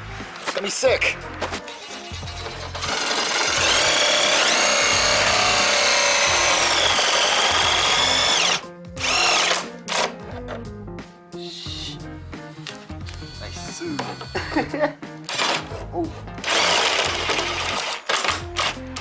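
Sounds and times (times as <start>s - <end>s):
power drill whining: 1.7s - 10.1s, 13.1s - 14.4s, 15.3s - 19.0s.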